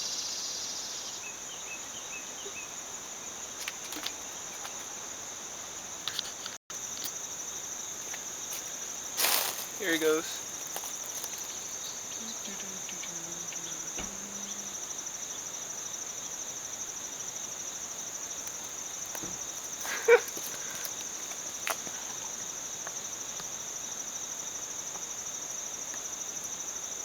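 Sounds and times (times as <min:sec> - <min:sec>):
insect chorus trilling: 0:00.0 - 0:27.0.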